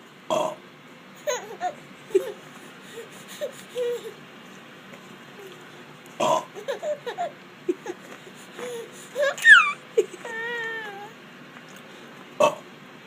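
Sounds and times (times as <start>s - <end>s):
baby squeaking and cooing: 9.2s - 11.2s.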